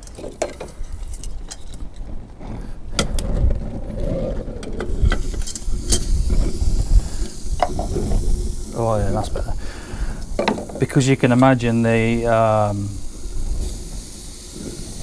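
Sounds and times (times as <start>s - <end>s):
wind rumbling on microphone: 0.7s - 15.0s
sharp clicks and knocks: 10.2s - 10.9s.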